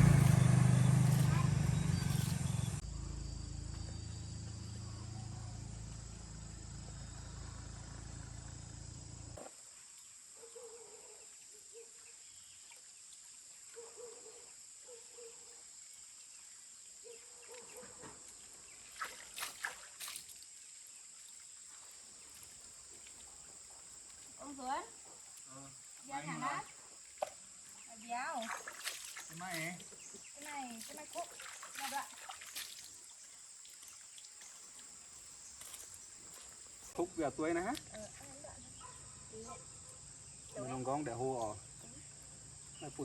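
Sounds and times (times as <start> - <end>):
low motor hum: 0.0 - 9.4
insects chirring: 0.0 - 43.0.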